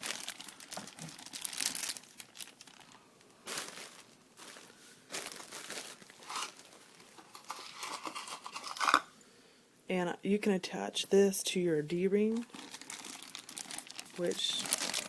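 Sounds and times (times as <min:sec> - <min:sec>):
packaging wrap crinkling: 0:00.0 - 0:08.3, 0:12.2 - 0:15.0.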